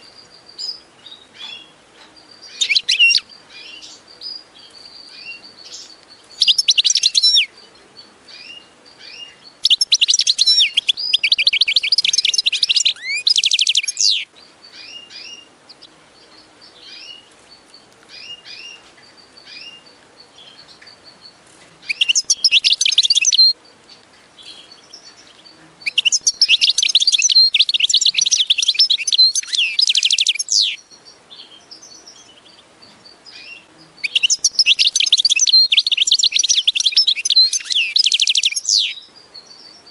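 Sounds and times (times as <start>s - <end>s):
songbird trilling: 0.0s - 39.9s
bird single chirps: 8.3s - 39.9s.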